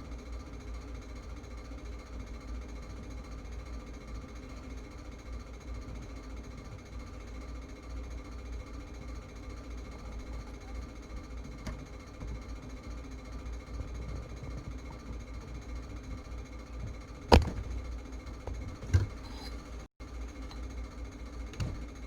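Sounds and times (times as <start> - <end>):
faint mechanical buzz: 0.0 - 22.0
steady low hum: 12.0 - 22.0.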